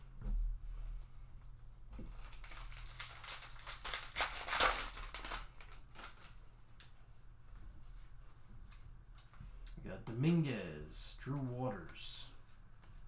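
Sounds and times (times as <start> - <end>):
wrapper crinkling and rustling: 1.9 - 7.0.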